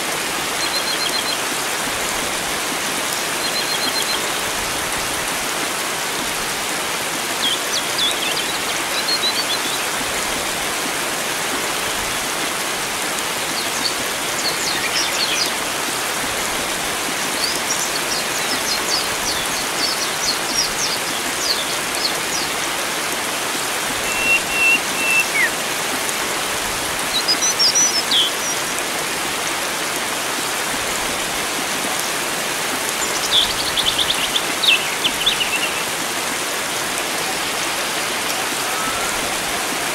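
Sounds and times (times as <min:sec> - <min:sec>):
flowing water rushing: 0:00.0 - 0:39.9
birds chirping: 0:24.0 - 0:25.6, 0:27.1 - 0:28.8, 0:32.9 - 0:39.9.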